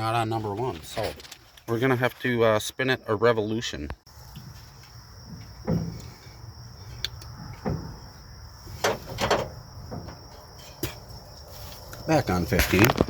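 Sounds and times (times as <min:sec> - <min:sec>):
engine clunks and scrapes: 0:00.0 - 0:02.4, 0:04.1 - 0:13.0.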